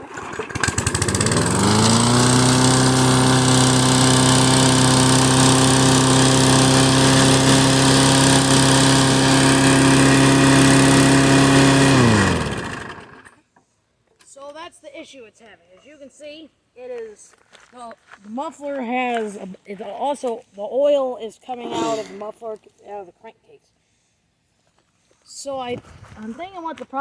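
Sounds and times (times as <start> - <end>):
lawn mower engine running: 0.0 - 13.4.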